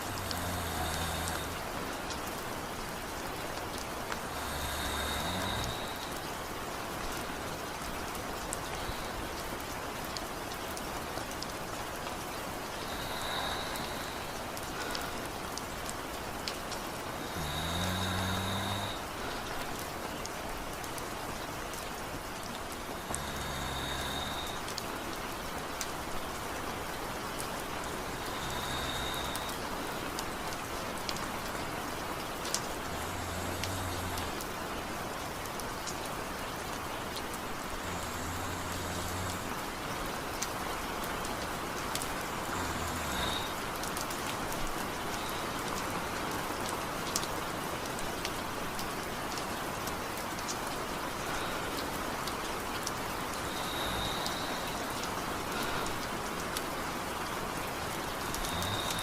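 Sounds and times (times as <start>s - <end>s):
man snoring lightly: 0.0s - 1.8s, 4.2s - 6.2s, 12.8s - 15.2s, 17.0s - 19.5s, 22.8s - 24.7s, 27.8s - 30.0s, 32.8s - 34.5s, 37.7s - 39.6s, 42.0s - 43.8s, 53.4s - 55.9s, 58.1s - 59.0s
steady rain: 0.0s - 59.0s.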